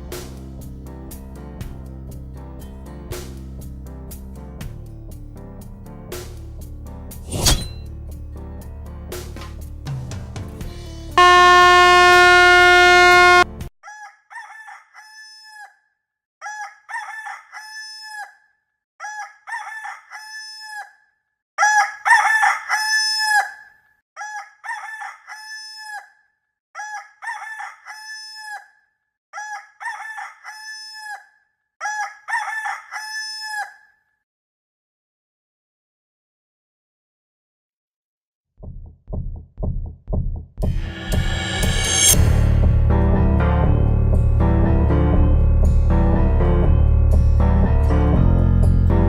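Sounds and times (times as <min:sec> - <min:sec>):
loud steady buzzing tone: 0:11.2 - 0:13.5
rooster crowing: 0:11.2 - 0:15.7, 0:19.0 - 0:20.4, 0:21.6 - 0:23.6, 0:24.2 - 0:26.0, 0:26.8 - 0:28.6, 0:29.4 - 0:31.2, 0:31.8 - 0:33.9.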